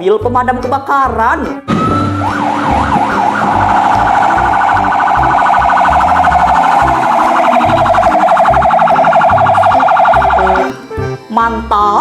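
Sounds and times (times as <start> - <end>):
toy siren warbling: 1.7 - 10.7.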